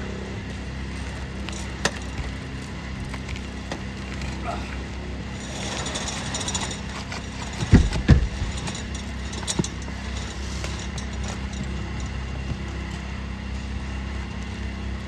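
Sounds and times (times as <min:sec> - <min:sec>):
engine humming: 0:00.0 - 0:15.0
sharp knocks: 0:07.5 - 0:08.8.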